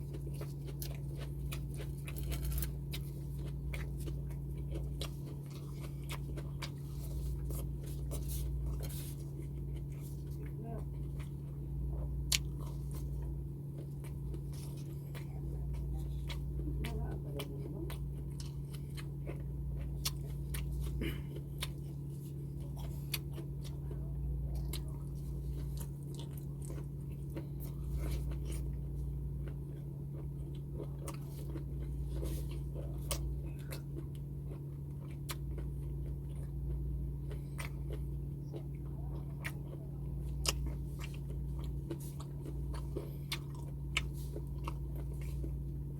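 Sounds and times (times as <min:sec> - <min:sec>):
person chewing crunchy food: 0:00.0 - 0:45.9
steady low hum: 0:00.0 - 0:45.9.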